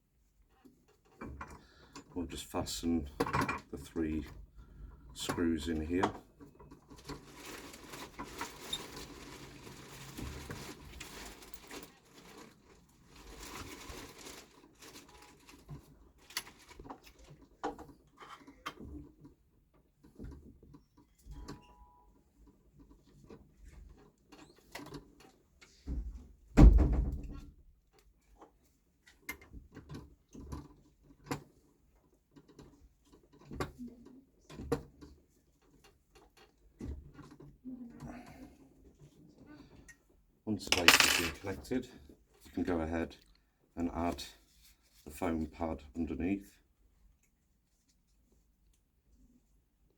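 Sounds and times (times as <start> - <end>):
rustling handling noise: 6.7 - 17.4, 40.7 - 41.7.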